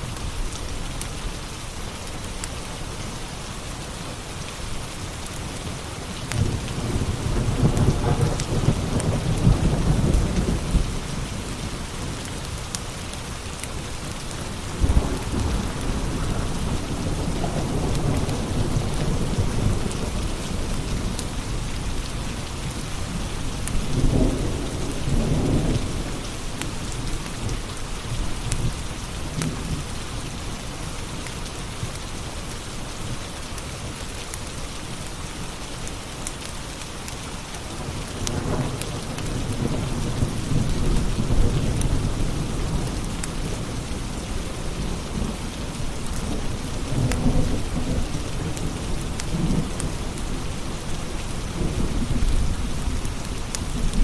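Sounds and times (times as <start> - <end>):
heavy rain: 0.0 - 54.0
rolling thunder: 6.3 - 12.3, 13.8 - 30.0.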